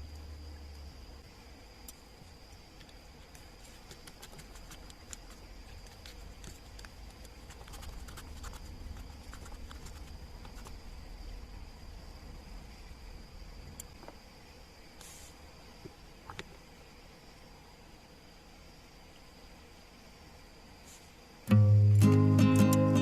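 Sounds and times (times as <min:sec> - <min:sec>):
light clicks and scratches: 0:02.5 - 0:10.8.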